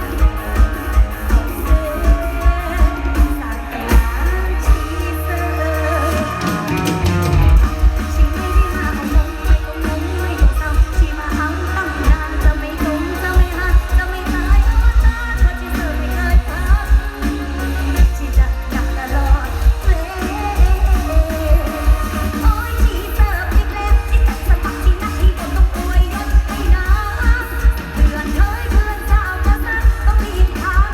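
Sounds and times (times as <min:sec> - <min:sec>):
live band music over pa: 0:00.0 - 0:30.9
person singing: 0:00.0 - 0:30.9
heavy kick drum beat: 0:06.2 - 0:30.9.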